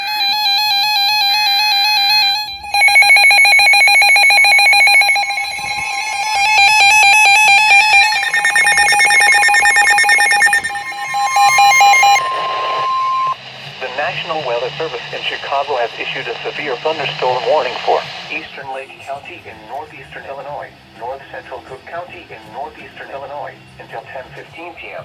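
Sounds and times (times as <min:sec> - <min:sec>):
steady warning tone: 0:01.7 - 0:18.2
warbling electronic alarm beeps: 0:02.3 - 0:13.4.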